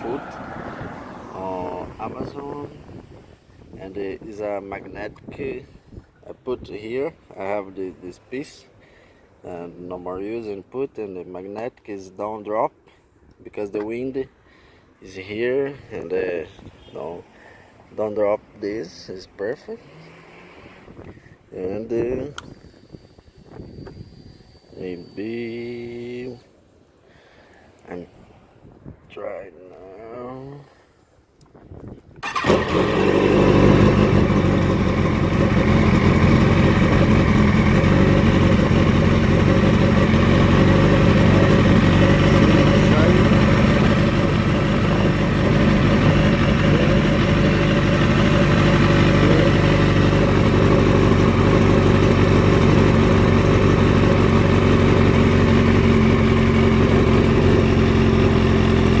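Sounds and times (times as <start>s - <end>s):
motorcycle engine starting and idling: 32.2s - 59.0s.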